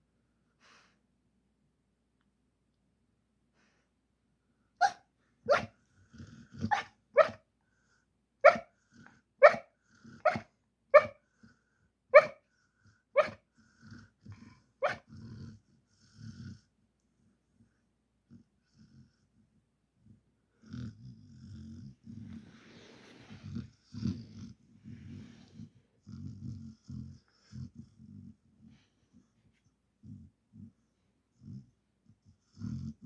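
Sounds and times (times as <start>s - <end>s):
dog barking in its sleep: 4.8s - 5.8s, 6.6s - 7.4s, 8.4s - 8.7s, 9.4s - 11.2s, 12.1s - 12.4s, 13.2s - 13.4s, 14.8s - 15.2s
dog grunting and breathing: 5.8s - 6.9s, 12.7s - 16.8s, 20.1s - 33.0s.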